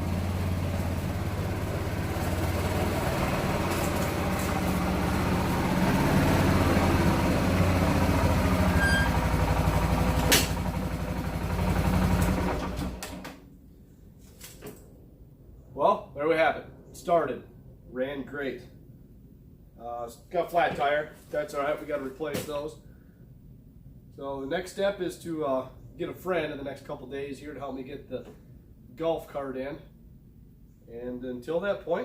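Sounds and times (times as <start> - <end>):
quad bike engine running: 0.0 - 13.2.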